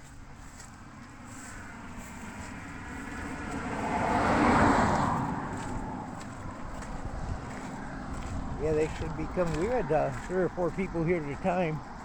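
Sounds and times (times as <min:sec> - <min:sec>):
car driving past: 0:01.2 - 0:10.0.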